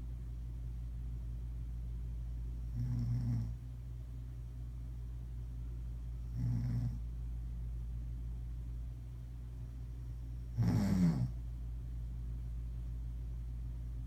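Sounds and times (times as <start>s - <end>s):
steady low hum: 0.0s - 14.0s
woman snoring: 2.8s - 3.5s, 6.4s - 7.0s, 10.6s - 11.4s.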